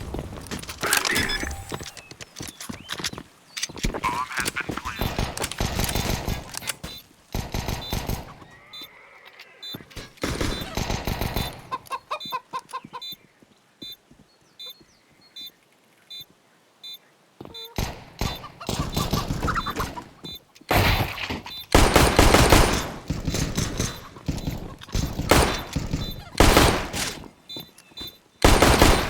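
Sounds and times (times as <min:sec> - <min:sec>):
pistol gunfire: 0:21.7 - 0:24.0, 0:25.1 - 0:27.2, 0:28.4 - 0:29.0.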